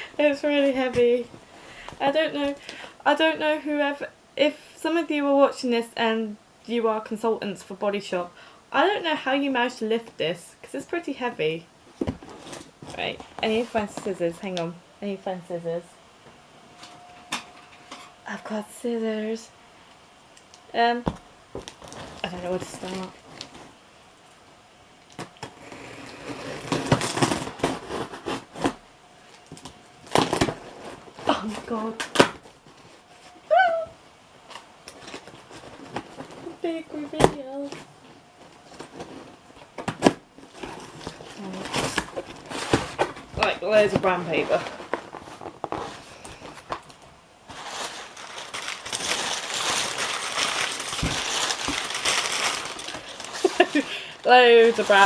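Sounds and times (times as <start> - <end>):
packing paper crinkling: 21.6 - 23.8, 40.4 - 55.0.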